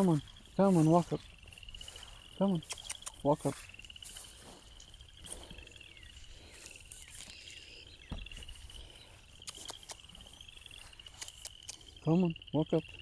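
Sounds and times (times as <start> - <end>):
low thump: 8.1 - 8.5.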